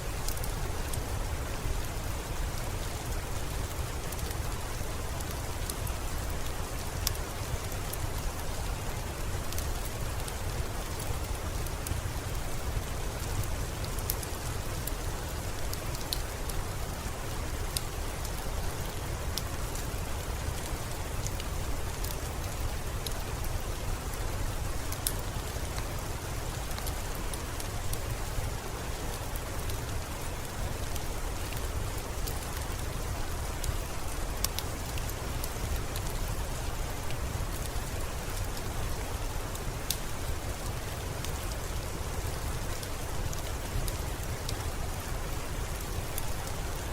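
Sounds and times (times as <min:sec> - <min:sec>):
steady rain hiss: 0:00.0 - 0:46.9
single raindrop ticks: 0:34.4 - 0:36.2.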